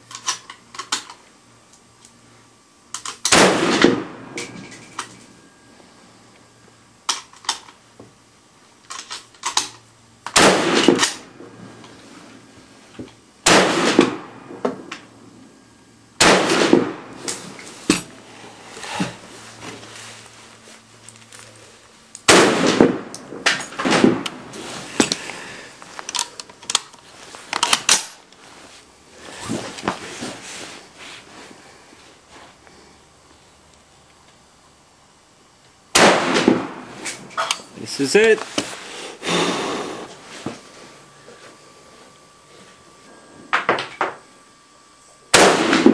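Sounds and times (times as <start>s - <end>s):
rifle shots with ringing echo: 3.3s - 4.5s, 10.4s - 11.3s, 13.4s - 14.6s, 16.2s - 17.5s, 22.3s - 24.5s, 36.0s - 37.0s, 45.3s - 45.9s.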